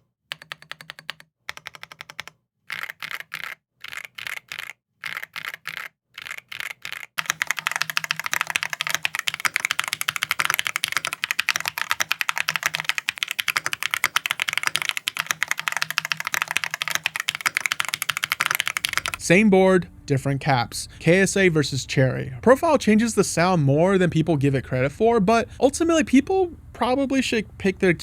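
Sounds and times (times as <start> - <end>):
mechanical keyboard typing: 0.3 - 19.2.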